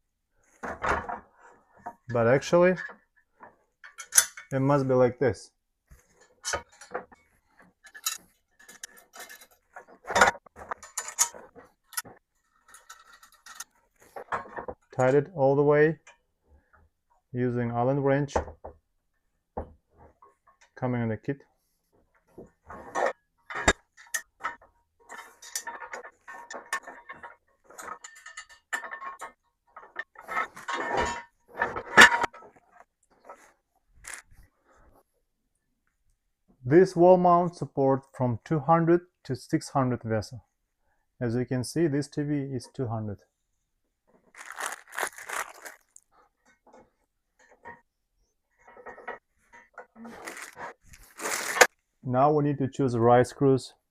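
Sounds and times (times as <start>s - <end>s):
metal parts clinking: 7.8s - 13.7s.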